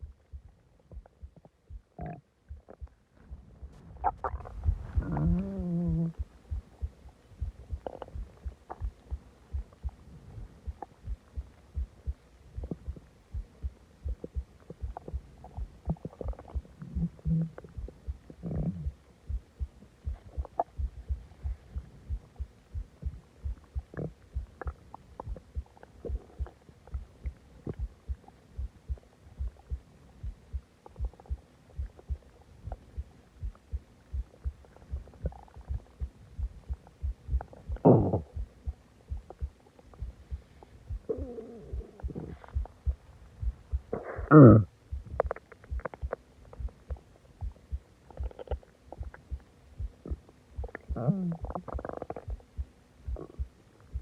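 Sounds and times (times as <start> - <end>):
low thumping: 0.0 - 51.6
stomach growling and gurgling: 0.0 - 54.0.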